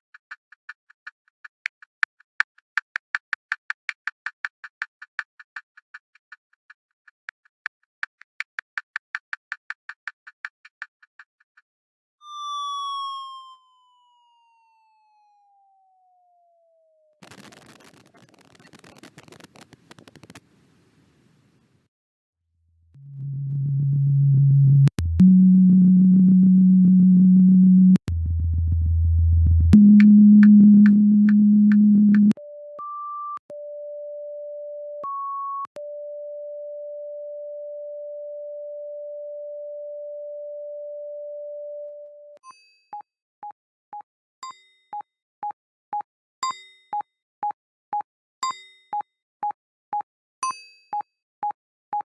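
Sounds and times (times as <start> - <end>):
low buzzing tones: 23.0 - 32.3.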